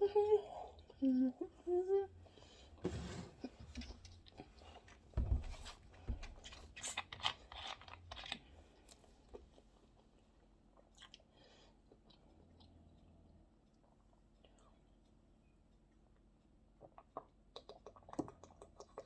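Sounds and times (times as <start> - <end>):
person chewing crunchy food: 6.2 - 12.8.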